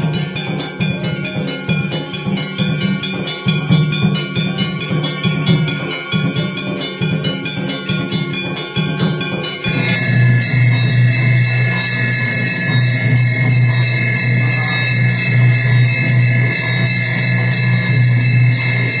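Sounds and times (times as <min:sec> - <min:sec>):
ringing metallic percussion: 0:00.0 - 0:19.0
low drone: 0:09.7 - 0:19.0
sustained high tones: 0:09.7 - 0:19.0.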